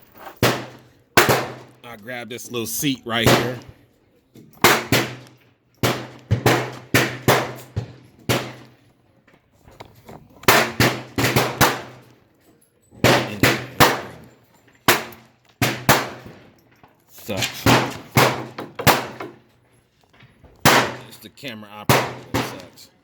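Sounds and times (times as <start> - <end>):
gunshots: 0.4 - 2.0, 3.1 - 3.8, 4.6 - 8.8, 10.4 - 12.1, 13.0 - 16.4, 17.3 - 19.4, 20.6 - 22.9.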